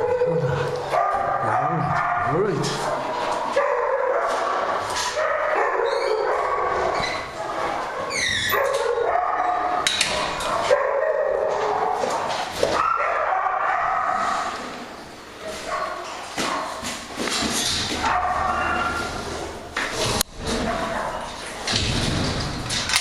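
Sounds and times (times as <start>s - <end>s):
dogs barking and whining: 0.0s - 21.4s
high dog yelps: 5.0s - 9.8s, 12.7s - 14.4s, 18.0s - 19.1s.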